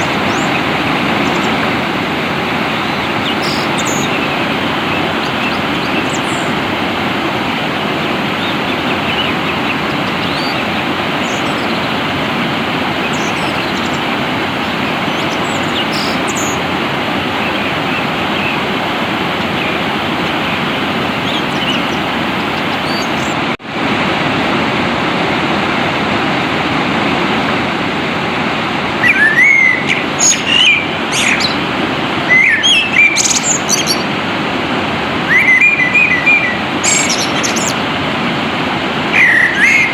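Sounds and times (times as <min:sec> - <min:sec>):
faint bird chirps: 0:00.0 - 0:23.4, 0:35.3 - 0:37.8, 0:39.1 - 0:39.9
songbird chirping: 0:00.0 - 0:23.4, 0:29.1 - 0:34.2, 0:35.3 - 0:37.9, 0:39.1 - 0:39.9
water rushing: 0:00.0 - 0:39.9.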